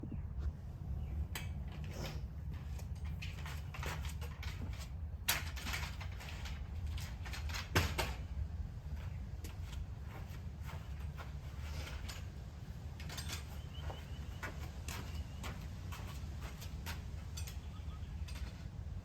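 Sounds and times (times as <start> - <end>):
low rumble: 0.0 - 1.3
laundry rustling and clicking: 1.3 - 19.0.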